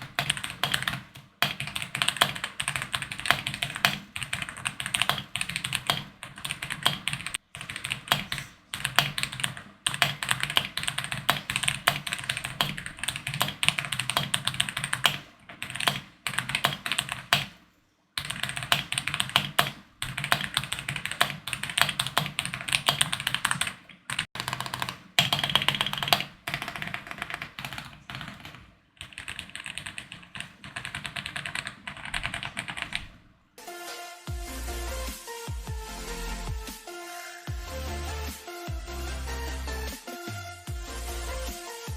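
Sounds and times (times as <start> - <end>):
fast mechanical keyboard typing: 0.0 - 17.6, 18.2 - 33.2.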